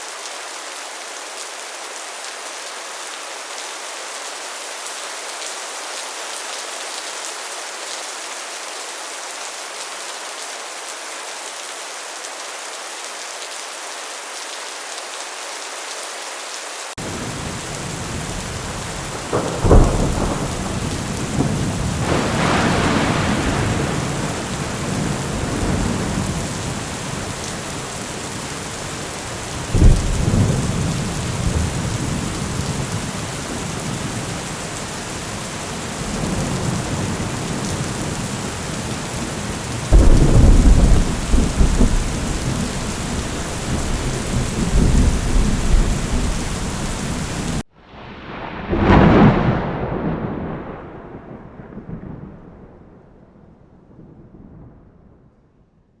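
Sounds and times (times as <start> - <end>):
heavy rain: 0.0 - 53.1
sharp thunderclaps: 17.0 - 55.2
thunder rumbling: 17.0 - 55.4.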